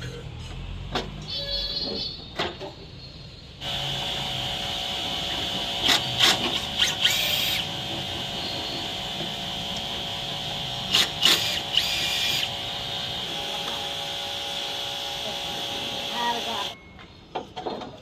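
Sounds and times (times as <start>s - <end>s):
small machine humming and hissing: 3.6s - 16.8s.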